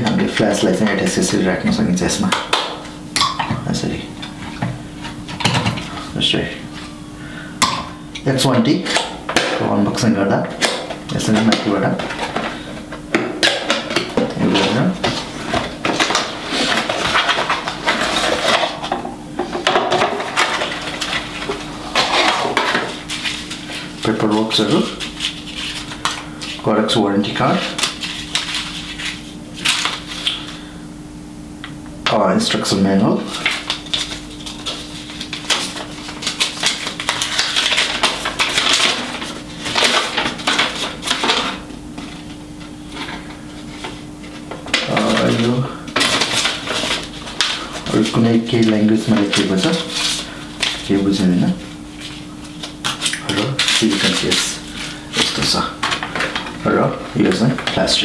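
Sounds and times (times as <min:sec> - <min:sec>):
packaging and paper rustling: 0:10.7 - 0:26.6, 0:27.4 - 0:30.6, 0:33.2 - 0:58.0.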